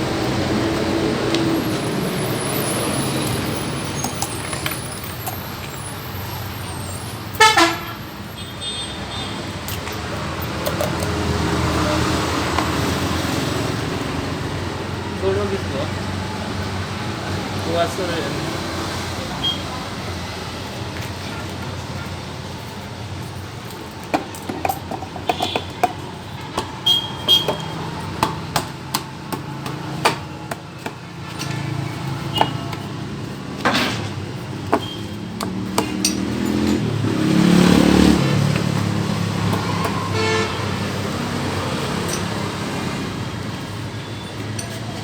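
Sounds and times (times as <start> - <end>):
motor vehicle passing: 0.0 - 6.8, 9.5 - 24.0, 26.0 - 45.0
traffic hum: 0.0 - 45.0
metallic knocks of hand tools: 34.7 - 37.0.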